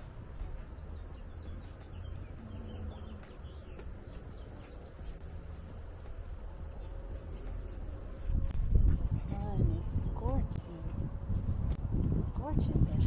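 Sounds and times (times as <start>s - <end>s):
birds chirping: 0.0s - 11.8s
low rumble on microphone: 6.4s - 13.0s.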